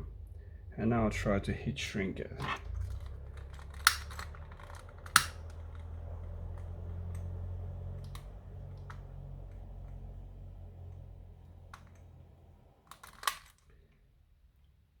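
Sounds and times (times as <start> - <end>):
low steady hum: 0.0 - 15.0
sharp clicks: 2.4 - 10.1, 12.9 - 13.6.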